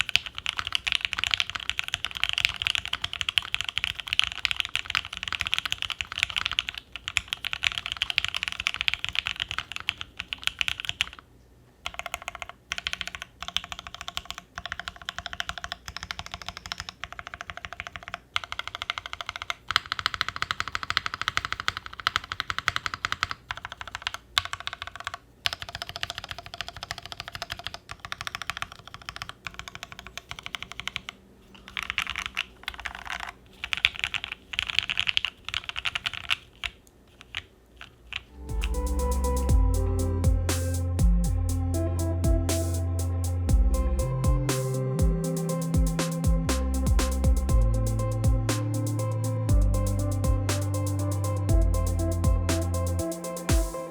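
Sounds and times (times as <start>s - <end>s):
mechanical keyboard typing: 0.0s - 11.2s, 11.8s - 38.9s.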